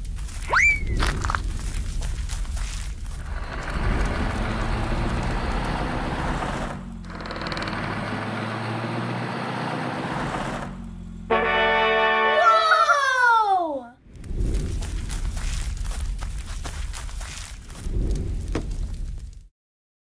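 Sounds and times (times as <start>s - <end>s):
vehicle engine running: 0.0s - 12.2s.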